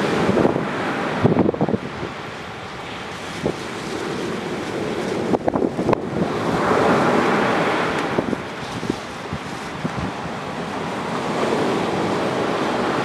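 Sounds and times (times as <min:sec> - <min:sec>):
sea waves washing onto sand: 0:00.0 - 0:13.0
campfire crackling and popping: 0:01.8 - 0:11.1.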